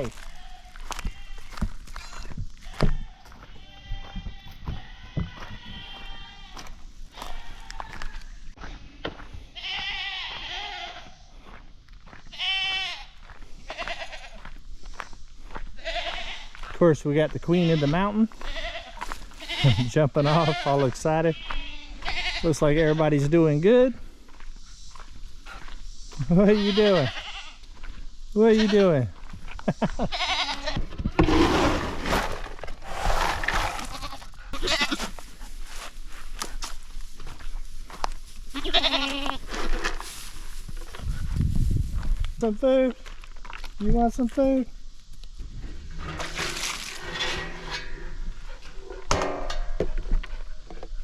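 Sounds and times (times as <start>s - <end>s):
goats bleating: 0.0s - 8.1s, 9.6s - 11.2s, 12.3s - 14.5s, 15.8s - 16.6s, 17.5s - 23.2s, 26.4s - 27.6s, 30.0s - 30.8s, 33.7s - 35.3s, 38.5s - 39.5s
rustling noise: 31.0s - 42.4s, 45.1s - 49.0s.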